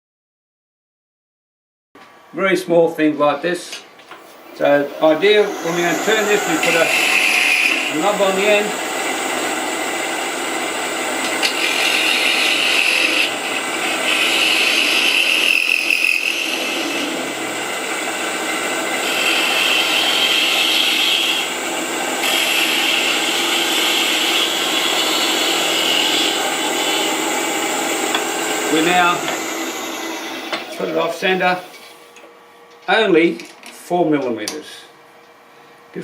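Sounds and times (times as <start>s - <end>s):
wood lathe running: 4.1s - 32.2s
turning tool cutting timber: 4.2s - 32.2s.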